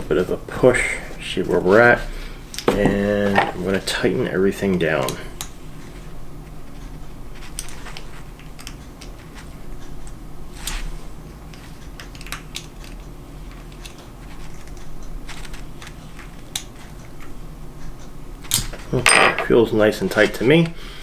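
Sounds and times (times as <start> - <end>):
light clicks of plastic parts: 6.7 - 18.9.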